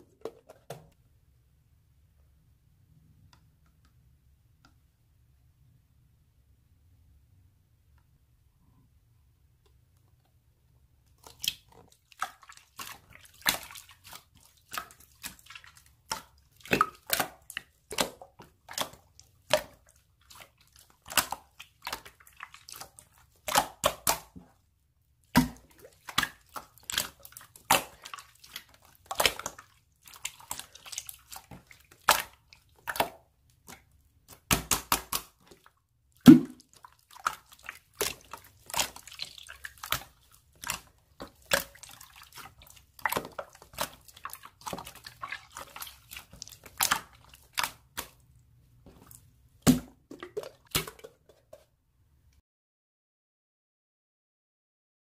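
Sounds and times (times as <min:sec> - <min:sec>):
slime squished wet pops: 0:21.1 - 0:24.4, 0:25.3 - 0:35.4, 0:36.2 - 0:48.2, 0:49.6 - 0:51.1.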